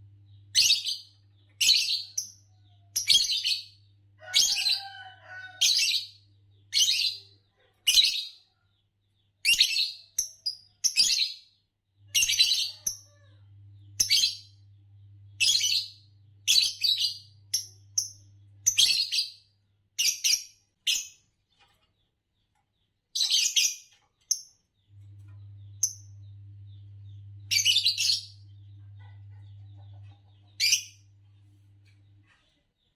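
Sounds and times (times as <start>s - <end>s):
lovebirds chirping: 0.0s - 19.4s, 20.0s - 32.9s
low steady hum: 24.9s - 32.3s.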